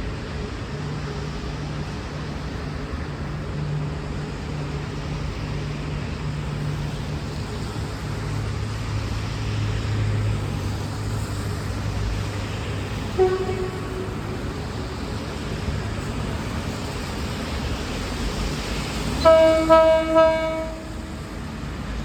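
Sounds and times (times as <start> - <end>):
diesel train engines humming: 0.0 - 22.0.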